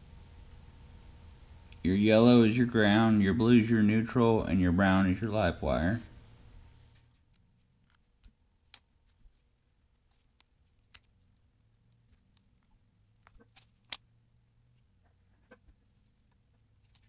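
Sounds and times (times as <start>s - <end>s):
faint low hum: 0.0s - 17.0s
clicks of wires and connectors: 10.0s - 14.1s.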